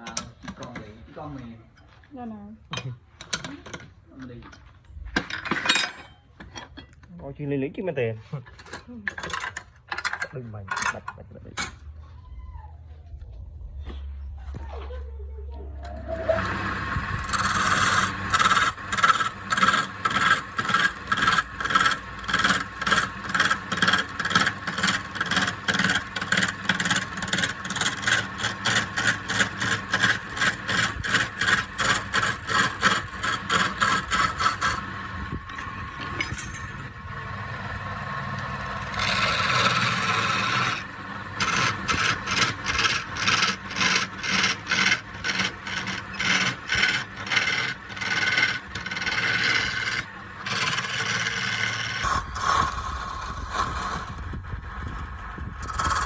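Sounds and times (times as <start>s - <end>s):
hand tool rasping on wood: 17.2s - 34.9s, 38.6s - 54.4s, 55.6s - 56.0s.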